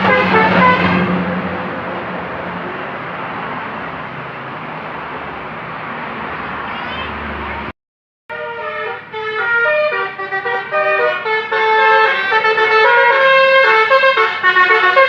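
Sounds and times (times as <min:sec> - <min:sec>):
multi-tone bus horn melody: 0:00.0 - 0:01.5, 0:08.3 - 0:15.0.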